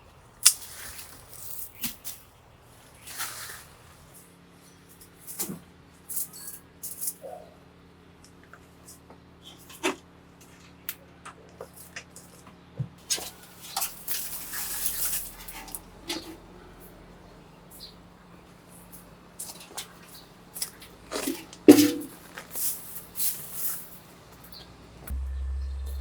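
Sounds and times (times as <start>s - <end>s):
foliage rustling: 0.4s - 4.2s, 13.0s - 25.0s.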